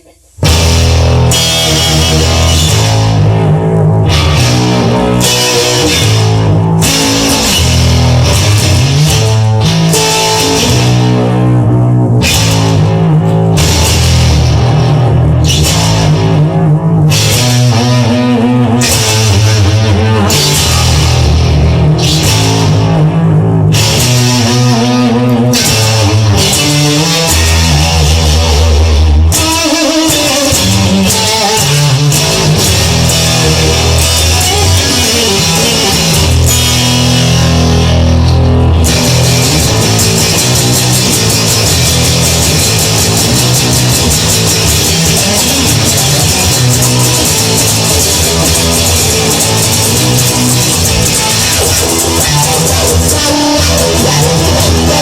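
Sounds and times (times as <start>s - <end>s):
instrumental rock music: 0.0s - 55.0s.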